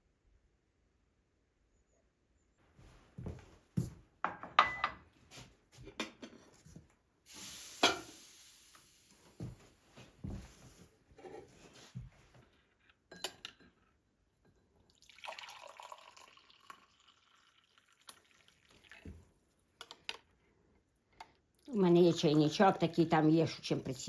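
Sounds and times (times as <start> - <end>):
tableware knocks and clinks: 4.3 - 5.0, 13.1 - 13.7
liquid pouring: 14.8 - 19.2.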